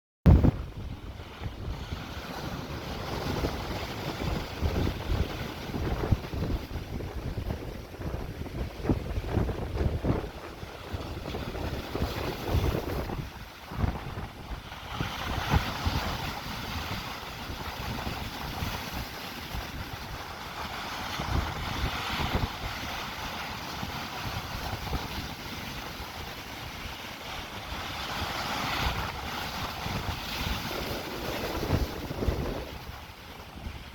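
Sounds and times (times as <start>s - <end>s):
sea waves crashing over rocks: 0.3s - 33.9s
wind buffeting microphone: 0.3s - 33.9s.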